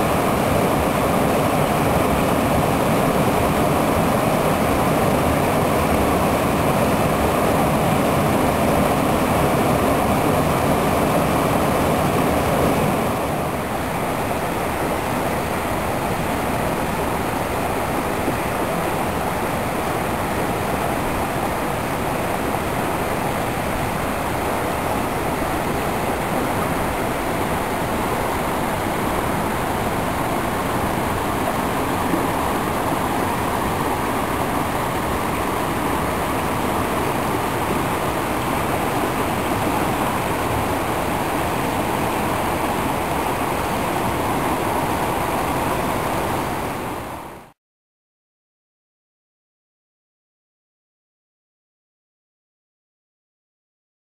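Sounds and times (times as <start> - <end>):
stream water rushing and babbling: 0.0 - 47.6.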